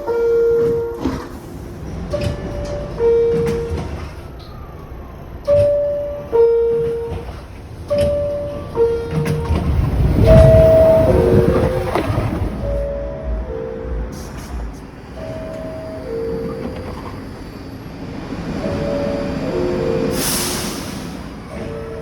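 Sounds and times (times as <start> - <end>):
train rumble: 0.0 - 22.0
two-note door chime: 2.2 - 3.9, 5.5 - 7.3, 7.9 - 14.1.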